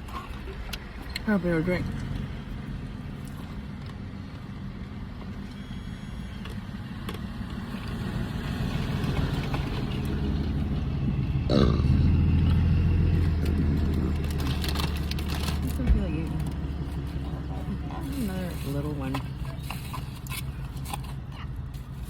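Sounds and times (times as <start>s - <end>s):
long deep burp: 11.5s - 12.3s.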